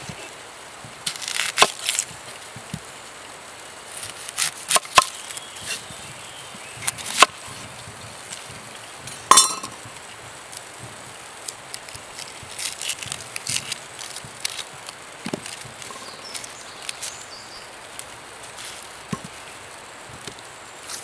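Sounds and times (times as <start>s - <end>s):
cooking utensils knocking and clinking: 9.1s - 9.8s.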